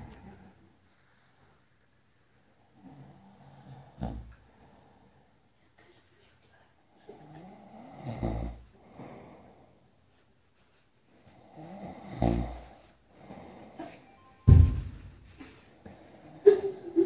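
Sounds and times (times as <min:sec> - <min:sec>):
snoring: 0:02.8 - 0:04.4, 0:07.1 - 0:09.7, 0:11.3 - 0:13.8.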